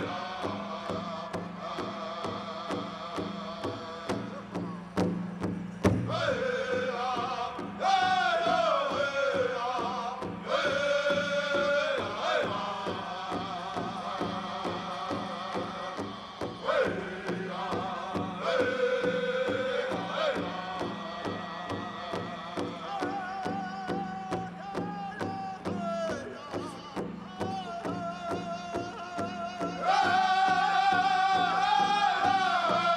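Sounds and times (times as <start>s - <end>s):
singers chanting: 0.0s - 5.0s, 5.7s - 32.9s
large drum beating: 0.0s - 32.9s.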